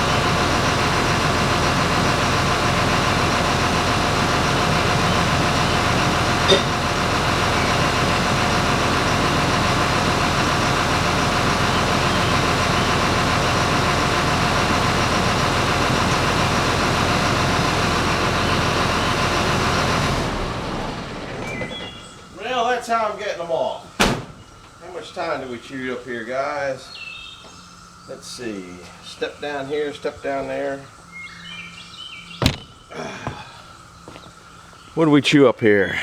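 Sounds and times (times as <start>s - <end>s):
engine running steadily: 0.0s - 26.2s.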